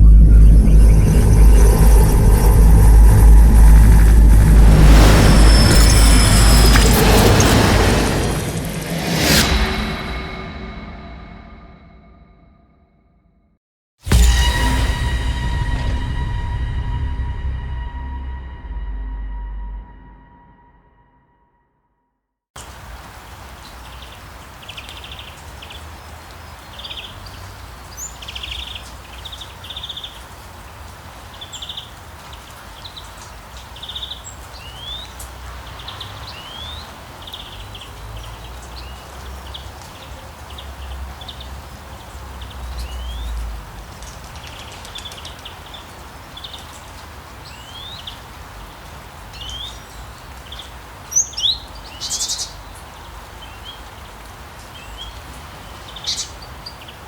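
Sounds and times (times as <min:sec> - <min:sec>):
small birds chirping: 0:23.4 - 0:57.0.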